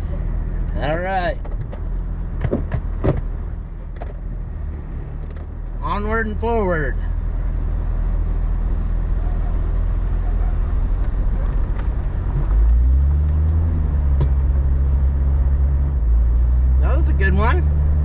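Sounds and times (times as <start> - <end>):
vehicle engine pulling uphill: 0.0 - 18.0
vehicle knocks and rattles: 1.3 - 4.3, 13.4 - 14.7.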